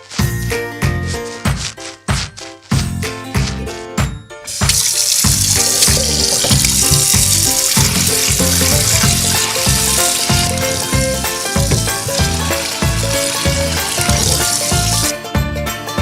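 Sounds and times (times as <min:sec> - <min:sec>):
background music with steady beat: 0:00.0 - 0:04.8, 0:06.4 - 0:16.0
running water rushing: 0:04.5 - 0:15.1.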